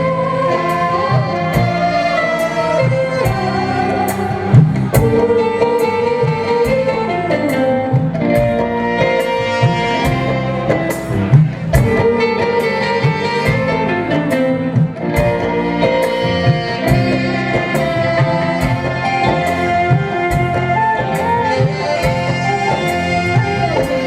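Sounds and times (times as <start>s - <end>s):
steady drum beat: 0.0s - 7.2s, 7.9s - 14.0s
live band playing instrumental: 0.0s - 24.0s.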